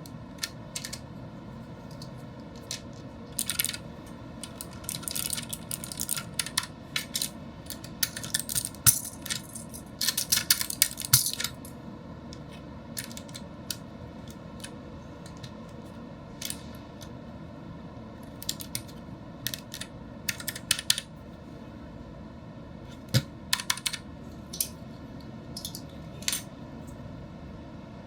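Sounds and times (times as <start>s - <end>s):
steady hum: 0.0s - 28.0s
mechanical keyboard keys clacking: 0.4s - 1.1s, 2.6s - 3.8s, 4.4s - 11.6s, 18.3s - 21.1s, 23.5s - 24.0s.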